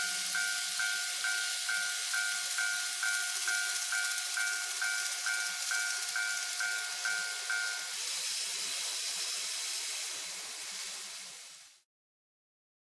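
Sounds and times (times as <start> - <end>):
level crossing warning bell: 0.0 - 8.0
steady hiss: 0.0 - 11.8.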